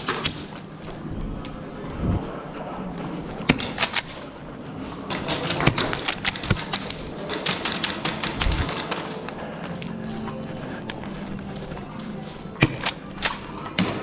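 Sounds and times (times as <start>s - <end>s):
rapid clicks and knocks: 5.1s - 11.6s.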